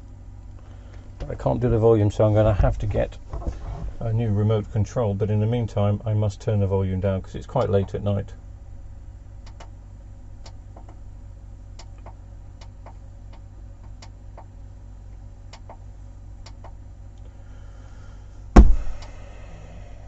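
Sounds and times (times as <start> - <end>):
steady low hum: 0.0 - 20.0
loud thump: 18.6 - 19.1.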